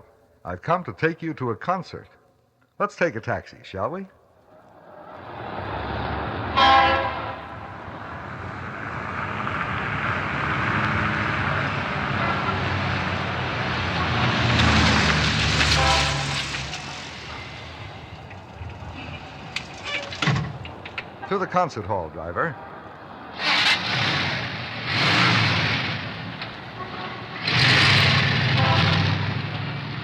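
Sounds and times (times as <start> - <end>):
traffic noise: 3.9 - 30.0
car horn honking: 6.5 - 7.8, 15.6 - 16.5, 26.8 - 27.7, 28.4 - 29.2.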